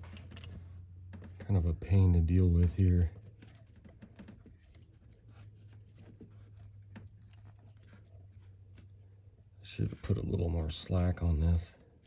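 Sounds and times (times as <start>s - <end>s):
clicks and rustles of wires: 0.0s - 9.2s.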